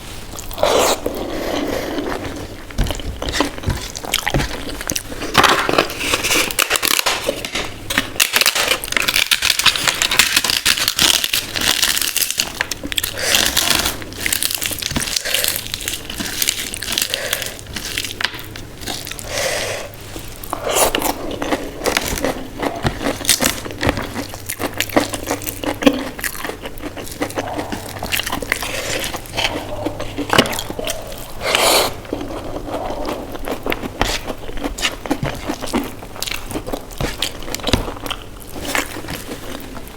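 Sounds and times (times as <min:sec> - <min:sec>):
crisp food crunching: 0:00.3 - 0:19.3, 0:19.9 - 0:39.9
wet chewing: 0:00.4 - 0:07.3, 0:19.9 - 0:39.9.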